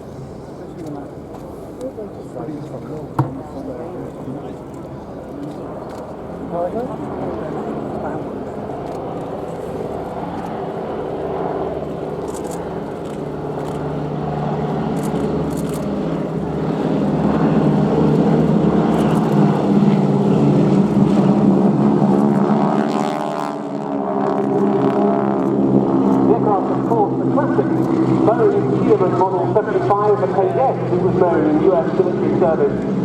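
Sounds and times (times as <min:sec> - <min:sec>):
biplane radial engines running: 0:00.0 - 0:33.0.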